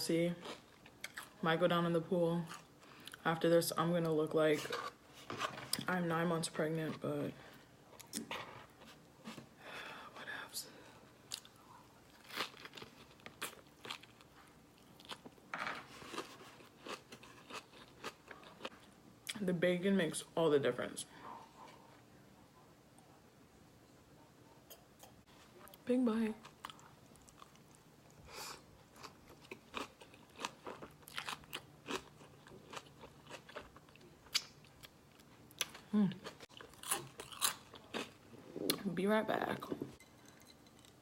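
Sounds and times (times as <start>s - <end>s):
person chewing crunchy food: 11.3s - 18.9s, 26.4s - 38.2s.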